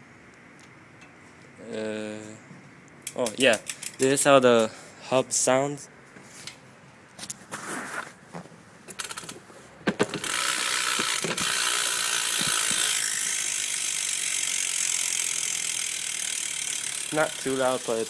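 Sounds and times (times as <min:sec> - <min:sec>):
hub ratcheting buzz: 0:03.0 - 0:04.3, 0:08.9 - 0:18.0
wheel knocks and clicks: 0:08.9 - 0:13.0.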